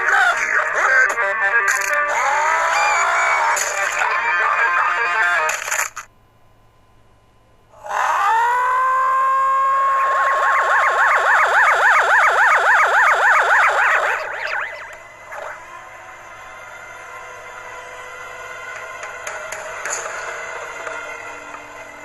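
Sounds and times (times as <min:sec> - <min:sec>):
siren-like wail: 0:01.9 - 0:04.8, 0:07.8 - 0:18.6.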